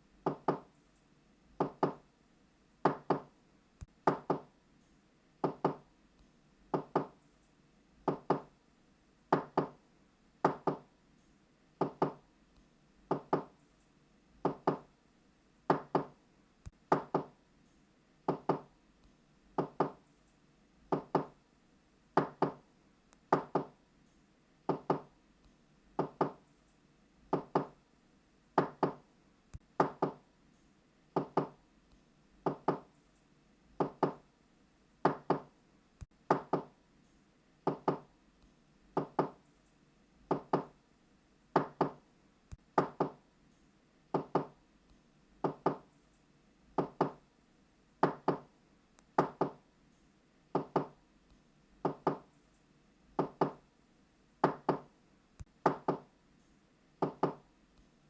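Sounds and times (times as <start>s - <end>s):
knocking on a door: 0.2s - 0.7s, 1.6s - 2.0s, 2.8s - 3.3s, 4.1s - 4.5s, 5.4s - 5.8s, 6.7s - 7.2s, 8.1s - 8.5s, 9.3s - 9.8s, 10.4s - 10.9s, 11.8s - 12.2s, 13.1s - 13.5s, 14.4s - 14.9s, 15.7s - 16.1s, 16.9s - 17.3s, 18.3s - 18.7s, 19.6s - 20.0s, 20.9s - 21.4s, 22.2s - 22.6s, 23.3s - 23.7s, 24.7s - 25.1s, 26.0s - 26.4s, 27.3s - 27.8s, 28.6s - 29.0s, 29.8s - 30.2s, 31.2s - 31.6s, 32.4s - 32.9s, 33.8s - 34.2s, 35.0s - 35.5s, 36.3s - 36.7s, 37.7s - 38.1s, 39.0s - 39.4s, 40.3s - 40.7s, 41.6s - 42.0s, 42.8s - 43.2s, 44.2s - 44.6s, 45.4s - 45.8s, 46.8s - 47.2s, 48.0s - 48.5s, 49.2s - 49.6s, 50.6s - 51.0s, 51.8s - 52.2s, 53.2s - 53.6s, 54.4s - 54.9s, 55.6s - 56.1s, 57.0s - 57.4s.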